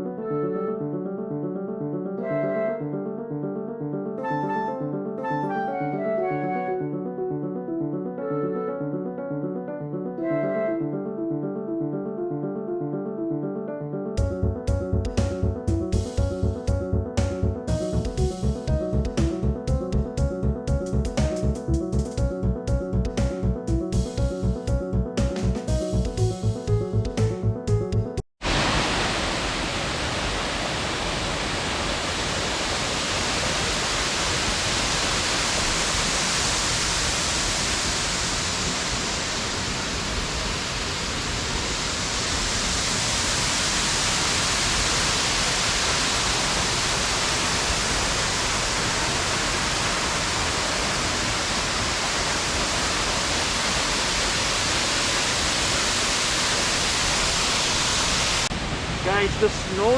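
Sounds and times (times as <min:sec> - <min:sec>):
waterfall rushing: 0:28.4 - 0:59.9.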